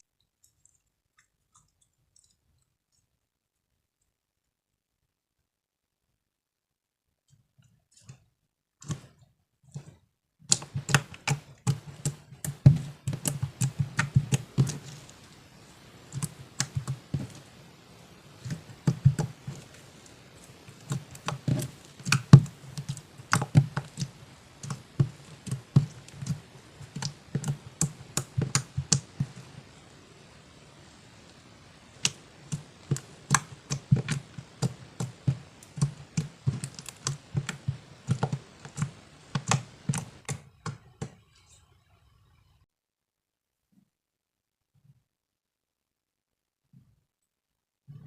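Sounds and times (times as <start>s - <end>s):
slime clicking and popping: 20.7s - 29.4s, 32.0s - 40.9s.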